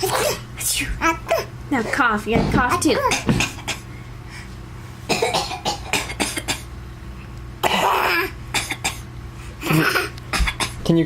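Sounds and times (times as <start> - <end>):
person fake coughing: 3.0 - 3.9, 5.1 - 6.7, 7.6 - 10.8.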